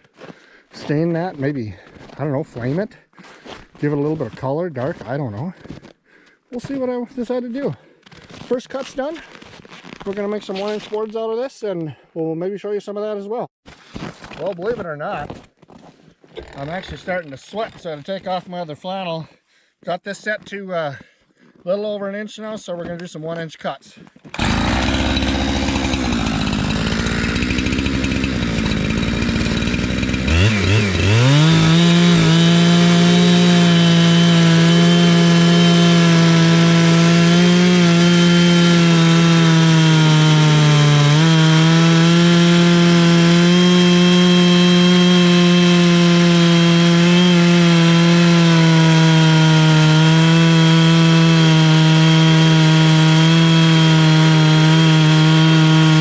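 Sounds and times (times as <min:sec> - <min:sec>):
chainsaw ripping log: 0:16.3 - 0:17.9, 0:24.2 - 0:56.0.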